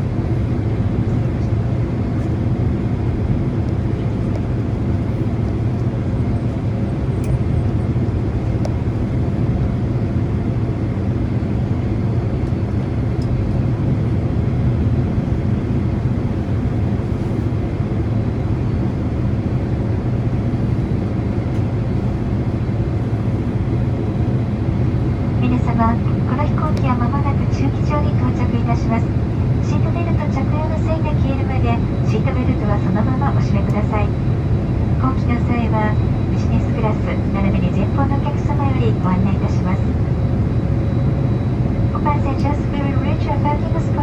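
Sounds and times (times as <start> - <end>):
aircraft cabin rumble: 0.0 - 44.0.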